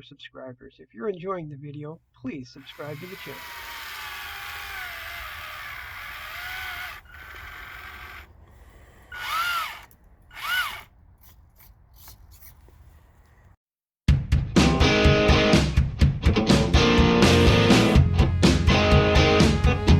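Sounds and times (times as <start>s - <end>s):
small electric motor whining: 2.6s - 8.4s, 9.0s - 10.9s.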